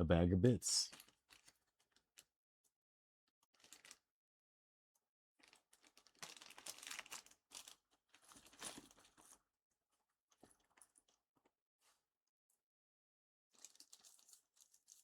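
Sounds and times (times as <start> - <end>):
plastic bag crinkling: 5.4 - 9.4, 13.6 - 15.0.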